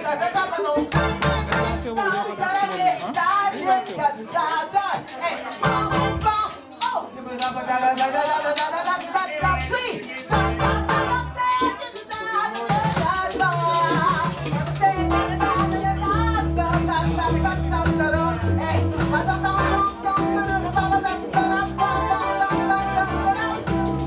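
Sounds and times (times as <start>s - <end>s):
person singing: 0.0s - 6.6s, 7.3s - 24.0s
drum kit beat: 0.0s - 6.7s, 8.2s - 24.0s
bass notes: 0.9s - 1.9s, 5.6s - 6.3s, 10.3s - 11.4s, 14.8s - 24.0s.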